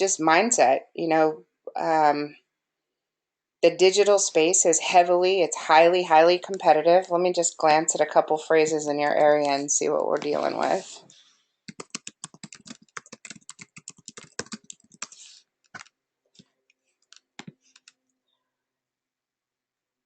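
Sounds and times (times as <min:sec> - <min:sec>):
typing on computer keyboard: 0:11.7 - 0:15.9, 0:17.0 - 0:18.0.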